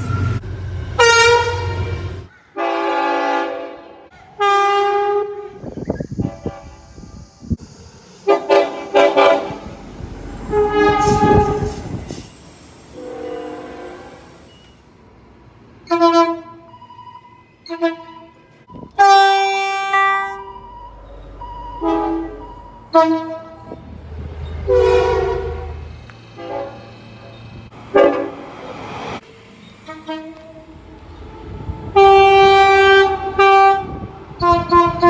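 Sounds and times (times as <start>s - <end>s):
passing train rumble: 0.0s - 16.8s, 17.9s - 35.0s
train horn blasts: 1.0s - 7.1s, 8.3s - 12.0s, 12.9s - 14.4s, 15.8s - 16.6s, 17.6s - 20.6s, 21.8s - 23.8s, 24.7s - 28.4s, 29.8s - 35.0s.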